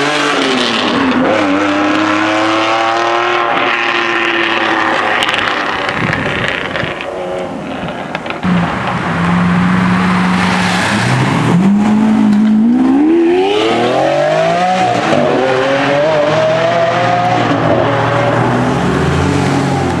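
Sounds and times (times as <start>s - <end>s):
sports car engine revving: 9.5s - 20.0s.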